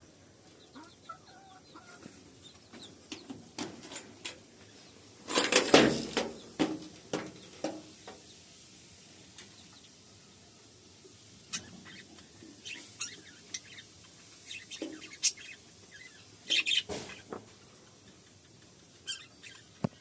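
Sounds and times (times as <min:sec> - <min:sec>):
clicks and knocks in bird house: 0:05.3 - 0:07.9
bird calls: 0:11.5 - 0:17.3, 0:18.0 - 0:20.0.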